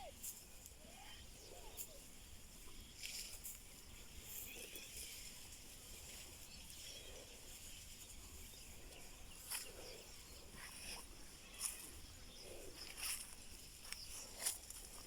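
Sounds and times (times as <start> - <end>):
soft rustles and clicks: 2.8 - 6.5.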